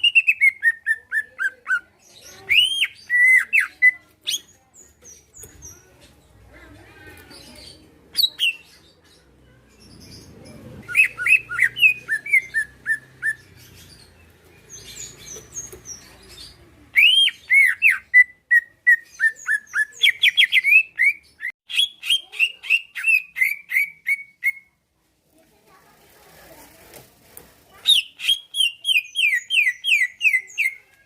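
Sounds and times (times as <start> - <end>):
bird whistling and chirping: 10.8 - 14.1, 17.0 - 24.7.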